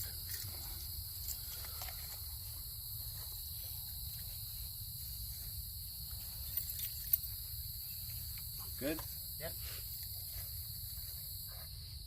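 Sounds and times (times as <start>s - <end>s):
crickets trilling: 0.0s - 12.0s.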